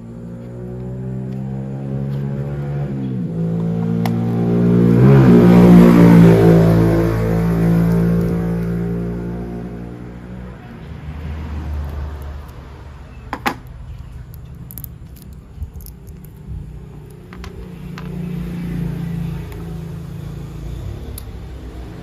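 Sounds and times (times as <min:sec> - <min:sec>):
sharp plastic clicks: 0:13.3 - 0:18.2.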